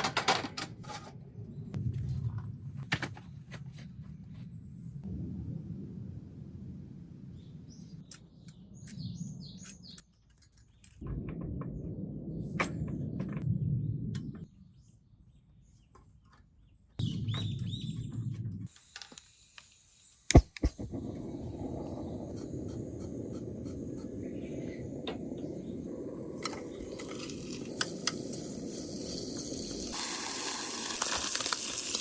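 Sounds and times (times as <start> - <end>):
small birds chirping: 7.3 - 11.0, 13.6 - 18.7, 19.9 - 28.7
sharp knocks: 20.3 - 21.3.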